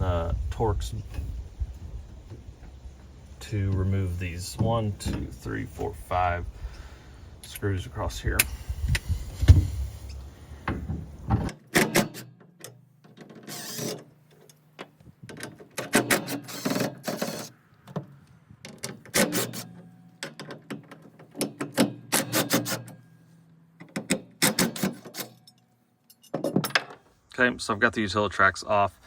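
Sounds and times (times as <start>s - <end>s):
tool clicking and rattling: 11.5s - 18.0s, 18.6s - 23.0s, 23.8s - 27.0s.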